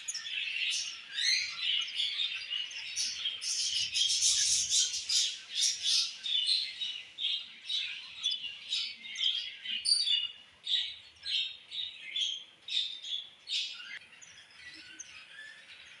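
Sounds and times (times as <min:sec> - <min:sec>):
budgerigars chirping: 0:00.1 - 0:11.6.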